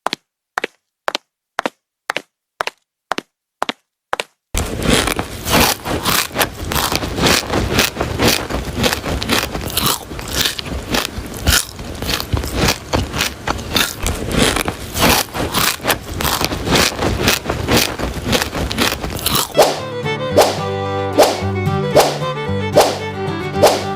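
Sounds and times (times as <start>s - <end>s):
gritty material scraping on hard surface: 4.6s - 19.3s.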